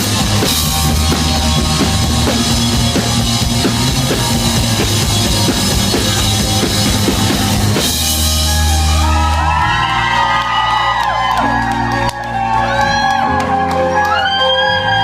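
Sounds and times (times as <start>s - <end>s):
driving drum beat: 0.0s - 9.3s
audience whooping: 0.0s - 15.0s
live rock band playing: 0.0s - 15.0s.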